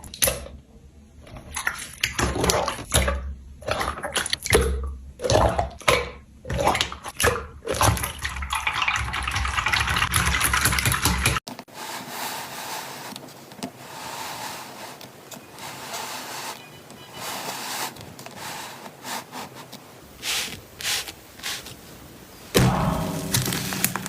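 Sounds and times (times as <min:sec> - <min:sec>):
faint handling sound: 0:11.5 - 0:22.5.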